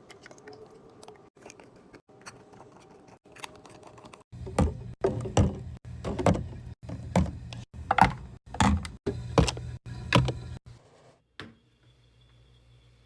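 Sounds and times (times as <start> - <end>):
items knocking in fridge: 4.4 - 9.6.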